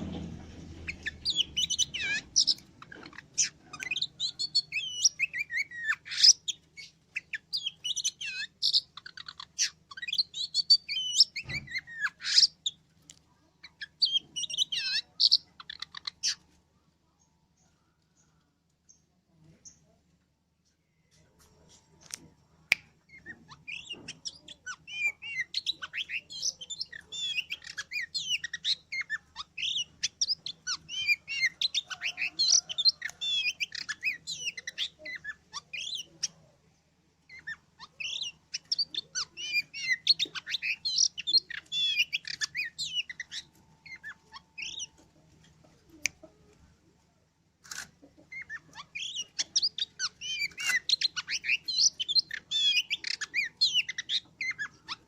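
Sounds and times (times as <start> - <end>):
bird singing whistles and chirps: 0.0 - 2.6, 37.3 - 44.9, 48.4 - 55.0.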